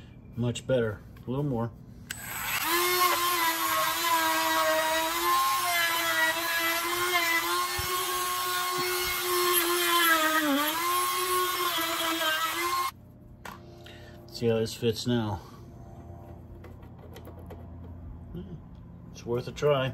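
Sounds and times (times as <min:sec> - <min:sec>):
small power tool whining: 0:02.1 - 0:13.0.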